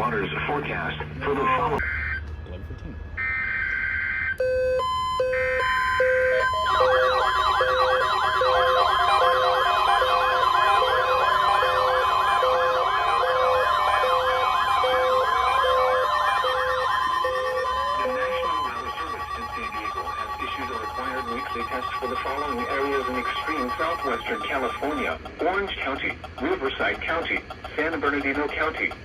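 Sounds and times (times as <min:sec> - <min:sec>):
steady warning alarm tone: 0:03.1 - 0:25.2
fast wailing siren tones: 0:03.2 - 0:25.1
on-off beeps: 0:04.4 - 0:25.1
screechy data bursts: 0:06.4 - 0:25.1
short beeps: 0:14.9 - 0:25.1.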